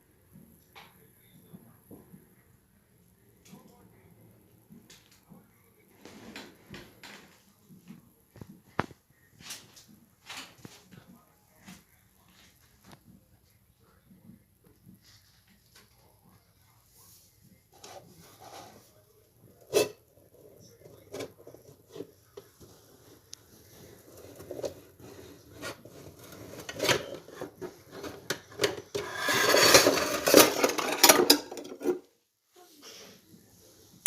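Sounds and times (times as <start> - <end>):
objects clicking and knocking: 26.4 - 32.1.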